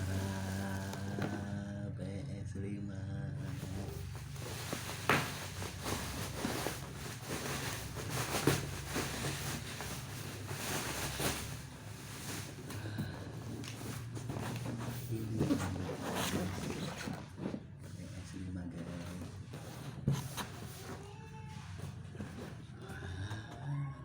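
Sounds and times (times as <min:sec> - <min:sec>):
packaging rustling: 0:00.0 - 0:01.5, 0:03.4 - 0:17.6
steady low hum: 0:00.0 - 0:20.7.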